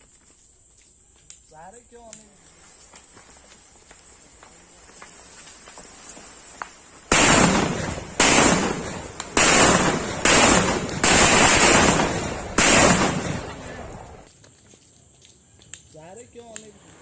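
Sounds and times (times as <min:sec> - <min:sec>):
firecracker hiss: 0:00.8 - 0:14.3
firecracker bursts: 0:03.7 - 0:14.3.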